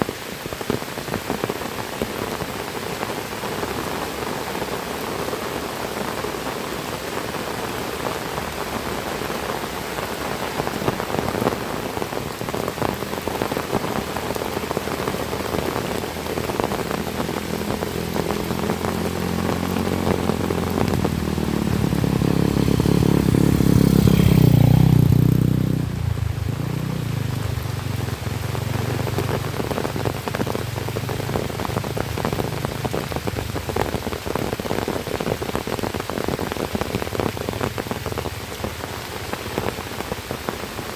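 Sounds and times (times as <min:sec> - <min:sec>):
heavy rain falling: 0:00.0 - 0:40.9
vehicle engine passing: 0:14.6 - 0:31.8.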